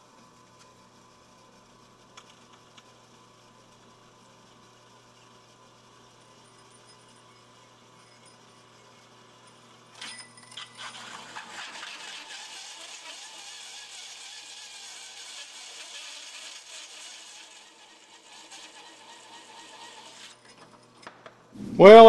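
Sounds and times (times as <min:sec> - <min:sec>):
hole saw grinding metal: 0:06.6 - 0:20.8.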